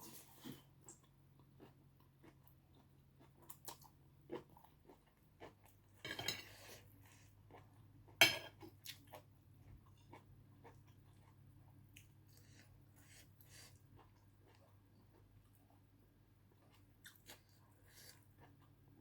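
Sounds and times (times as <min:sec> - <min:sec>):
person chewing noodles: 0:00.0 - 0:19.0
cutlery and dishes clinking: 0:06.0 - 0:06.7, 0:08.2 - 0:08.6.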